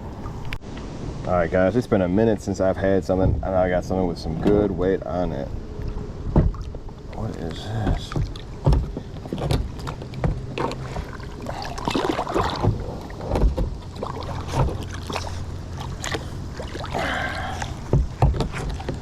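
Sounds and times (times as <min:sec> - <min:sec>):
water splashing: 0:02.0 - 0:19.0
knocks and clunks: 0:03.1 - 0:03.7, 0:06.3 - 0:11.3, 0:12.4 - 0:15.0, 0:17.7 - 0:19.0.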